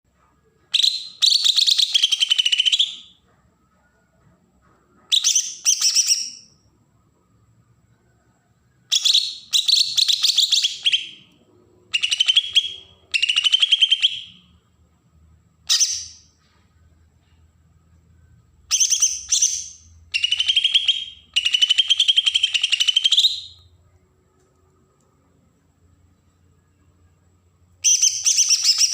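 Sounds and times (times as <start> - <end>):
bird singing rapid chattering notes: 0.8 - 3.1, 12.0 - 14.4, 18.7 - 23.7, 27.8 - 28.9.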